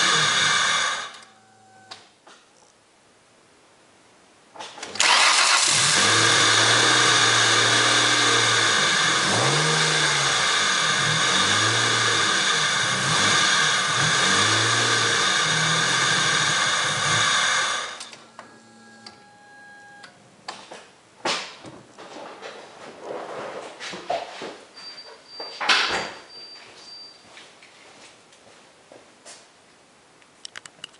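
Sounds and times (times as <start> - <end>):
car engine idling and revving: 0.0 - 1.8, 5.0 - 20.1.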